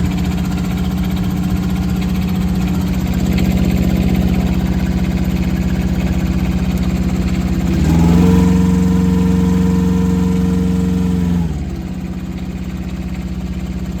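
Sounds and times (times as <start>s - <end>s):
excavator diesel engine revving: 0.0s - 14.0s.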